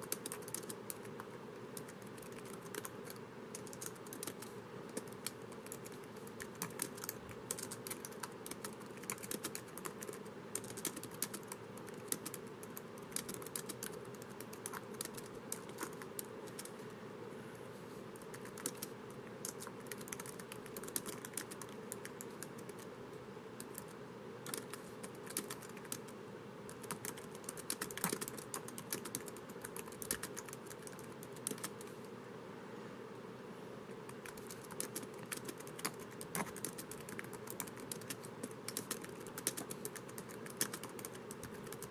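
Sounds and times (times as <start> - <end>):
laptop keyboard typing: 0.0 - 16.8, 18.2 - 22.9, 23.6 - 32.0, 34.1 - 41.9.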